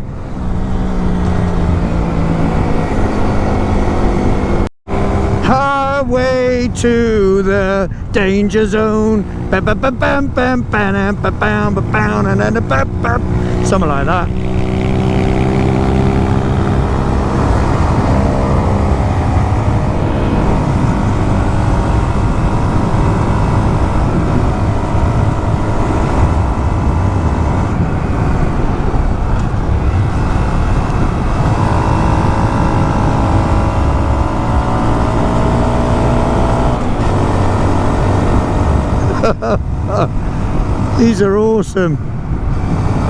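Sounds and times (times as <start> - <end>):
motorcycle engine cruising: 0.0 - 43.0
wind rumble on microphone: 0.0 - 43.0.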